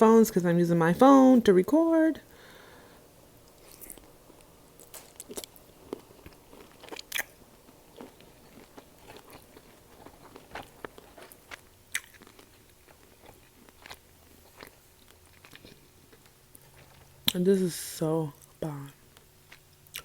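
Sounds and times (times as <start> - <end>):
chewing and biting food: 3.5 - 17.4.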